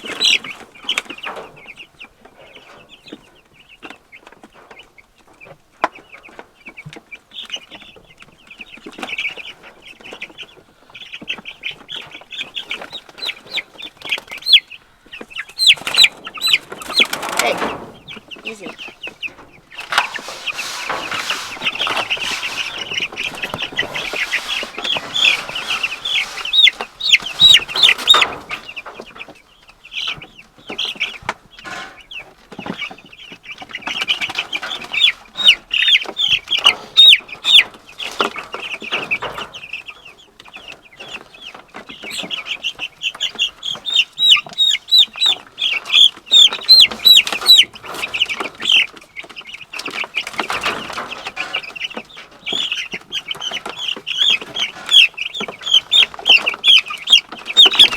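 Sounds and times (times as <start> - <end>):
chicks peeping: 0.0 - 57.9
knocks and rustles: 15.2 - 29.4, 40.4 - 57.9.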